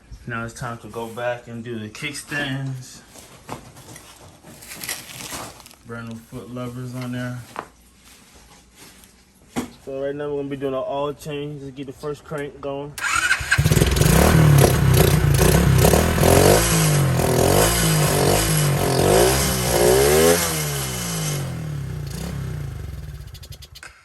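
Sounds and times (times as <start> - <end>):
dirt bike engine revving: 13.0 - 23.8.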